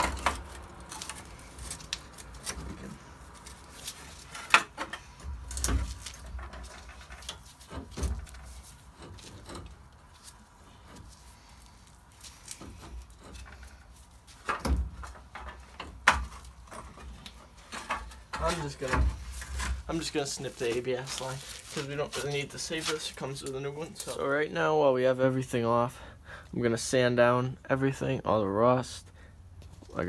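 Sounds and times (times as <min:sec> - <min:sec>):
metal parts and tools clunking: 0:00.0 - 0:11.3, 0:12.3 - 0:24.2.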